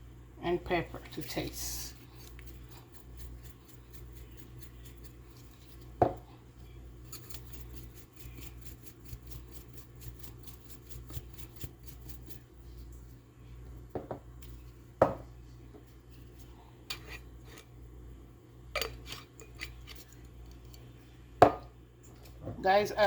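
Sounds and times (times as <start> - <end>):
seasoning container rattling: 2.2 - 6.0, 7.1 - 12.4.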